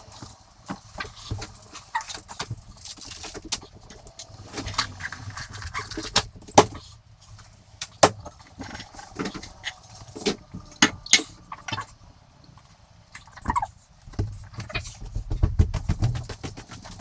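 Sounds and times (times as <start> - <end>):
household items clicking and knocking: 13.4 - 17.0.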